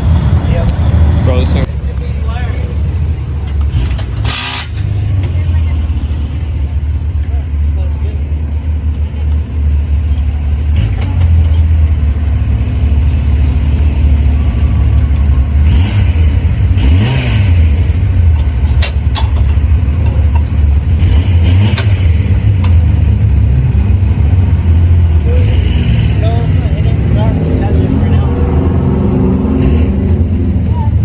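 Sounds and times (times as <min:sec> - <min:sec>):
vehicle engine droning: 0:00.0 - 0:31.0.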